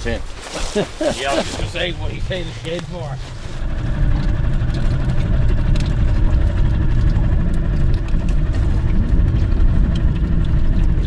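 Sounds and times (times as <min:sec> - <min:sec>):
engine running with low rumble: 0:00.0 - 0:11.0.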